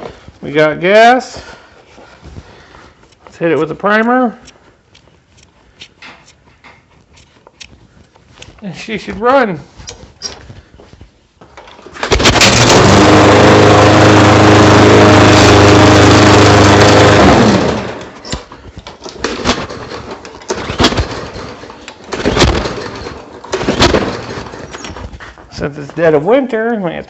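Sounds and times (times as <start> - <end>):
recoil starter pulls: 11.5 - 25.2
lawn mower engine running: 11.6 - 25.0.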